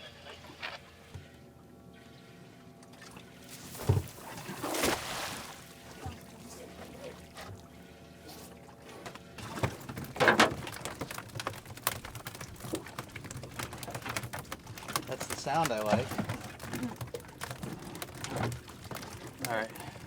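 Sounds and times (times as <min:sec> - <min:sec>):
water splashing and pouring: 0:03.0 - 0:07.4.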